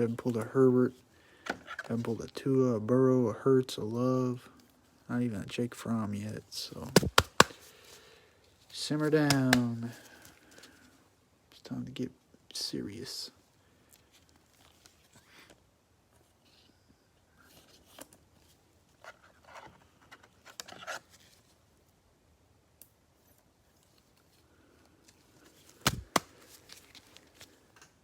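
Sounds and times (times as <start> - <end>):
cardboard and plastic rustling: 23.8 - 27.9.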